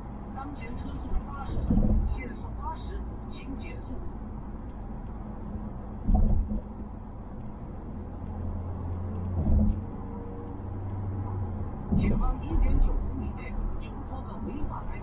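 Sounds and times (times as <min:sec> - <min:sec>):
in-cabin road rumble: 0:00.0 - 0:15.0
low engine hum: 0:00.0 - 0:15.0
low thumps: 0:01.5 - 0:02.1, 0:05.9 - 0:07.0, 0:09.3 - 0:09.9.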